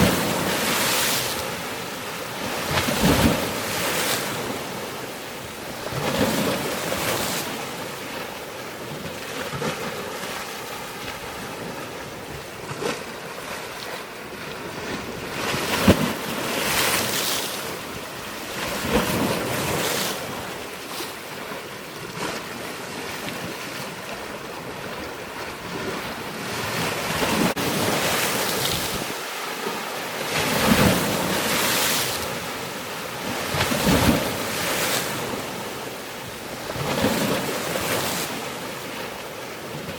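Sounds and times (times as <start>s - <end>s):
waves breaking: 0.0s - 39.9s
wind noise on microphone: 24.6s - 29.2s.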